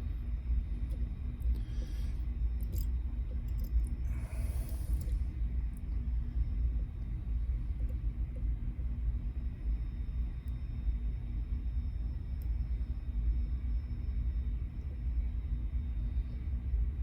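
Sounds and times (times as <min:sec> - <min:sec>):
steady low rumble: 0:00.0 - 0:17.0.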